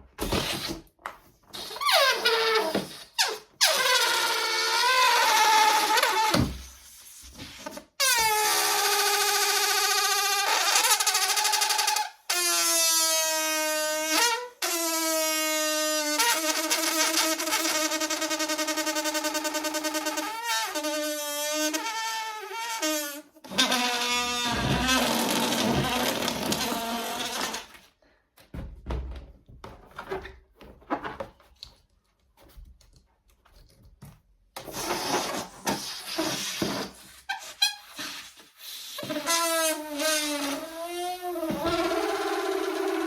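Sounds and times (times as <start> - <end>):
balloon squealing through neck: 1.5 - 7.2, 8.0 - 27.8, 34.7 - 43.0
air escaping from balloon: 1.5 - 27.8, 34.7 - 43.0.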